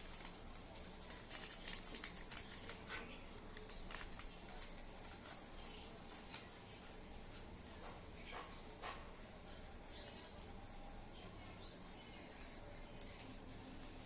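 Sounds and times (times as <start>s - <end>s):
paper rustling and crinkling: 0.0s - 6.5s.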